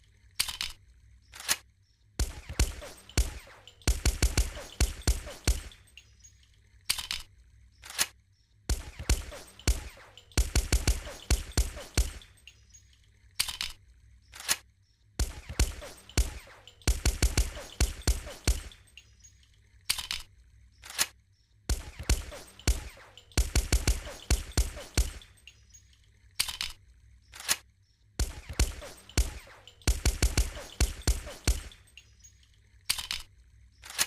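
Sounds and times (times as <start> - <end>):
suppressed pistol shots: 2.2 - 5.8, 8.7 - 12.3, 15.2 - 18.7, 21.7 - 25.3, 28.2 - 31.8.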